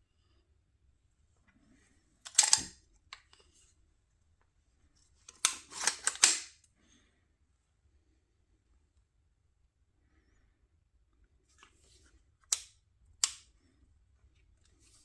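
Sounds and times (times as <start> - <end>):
hard parts clicking and rattling: 2.3 - 2.7, 5.3 - 6.5.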